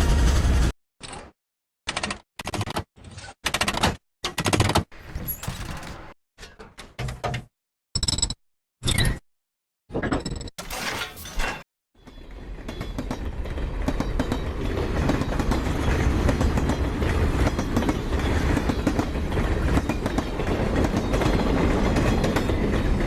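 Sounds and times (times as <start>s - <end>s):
train rumbling on rails: 0.0s - 0.7s, 12.0s - 23.0s.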